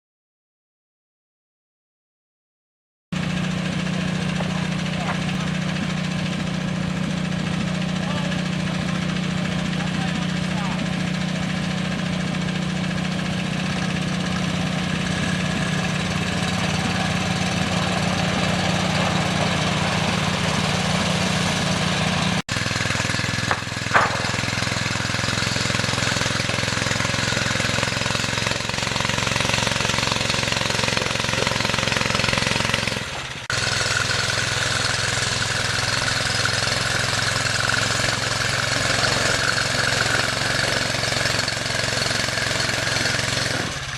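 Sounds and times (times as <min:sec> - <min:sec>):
engine running with rough clatter: 0:03.2 - 0:43.9
sharp knock: 0:23.4 - 0:24.6.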